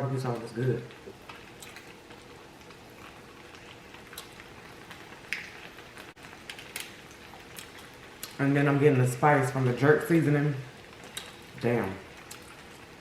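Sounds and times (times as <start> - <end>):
wet chewing mouth clicks: 12.2 - 12.6.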